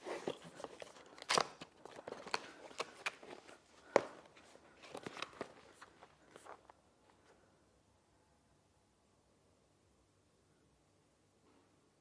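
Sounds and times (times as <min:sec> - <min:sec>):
packaging clicks and rustles: 0:00.0 - 0:06.7.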